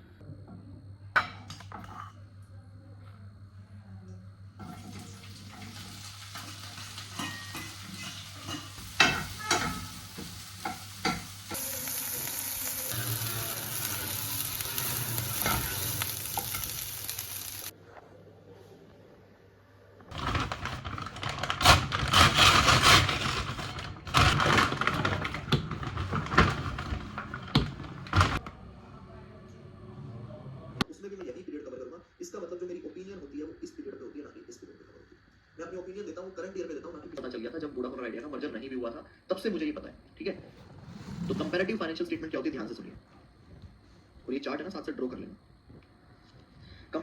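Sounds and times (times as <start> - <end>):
food sizzling in a pan: 4.6 - 17.7
utensils stirring and clinking: 4.6 - 17.7.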